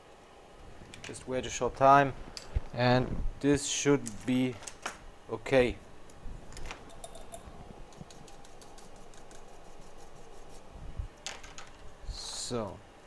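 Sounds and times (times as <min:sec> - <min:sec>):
soldering iron ticks and crackles: 0:07.9 - 0:09.5.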